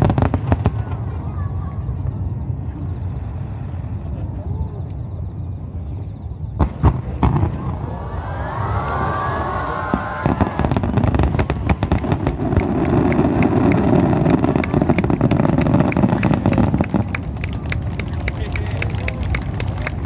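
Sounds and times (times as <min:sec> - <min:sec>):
fireworks bursts and crackling: 0:00.0 - 0:02.2, 0:06.6 - 0:20.0.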